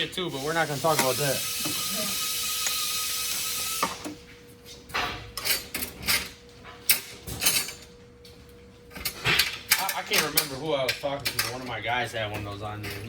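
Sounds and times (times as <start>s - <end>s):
metal tools clinking: 9.0s - 13.0s.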